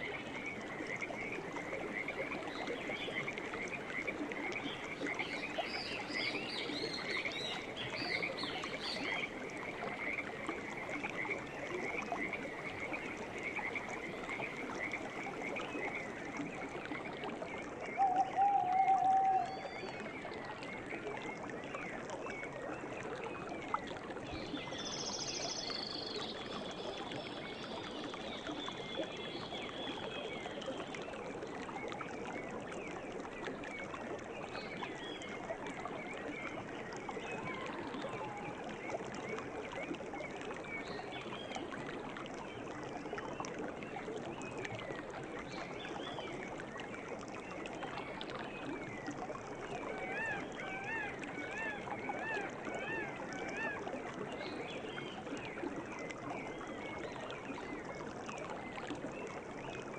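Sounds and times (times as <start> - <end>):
river water flowing: 0.0 - 59.9
bird call and trill: 18.0 - 19.7.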